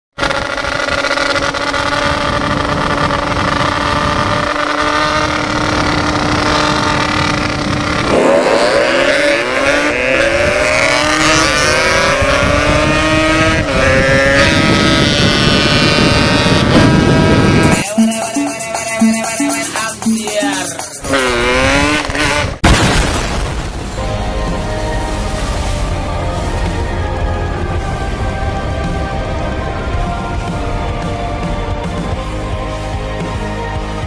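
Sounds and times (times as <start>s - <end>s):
two-stroke motorcycle engine revving: 0.2s - 17.9s, 19.0s - 22.6s.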